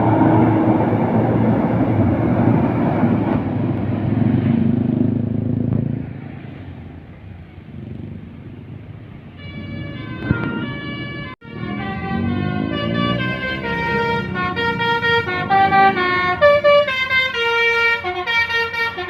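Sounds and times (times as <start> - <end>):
bus engine and road noise: 0.0 - 19.0
multi-tone bus horn tune: 9.3 - 19.0.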